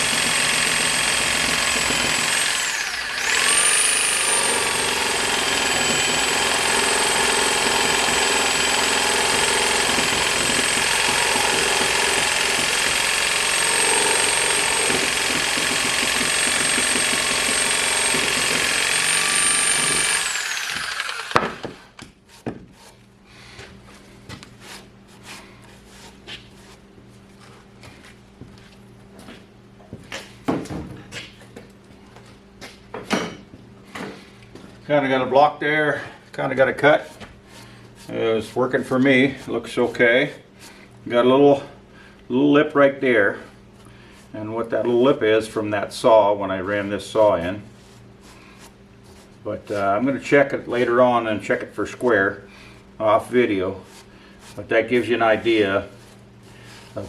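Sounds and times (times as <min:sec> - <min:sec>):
electric power saw cutting wood: 0:00.0 - 0:22.0
knocks and clicks of handling wood: 0:20.7 - 0:23.0, 0:27.8 - 0:34.7.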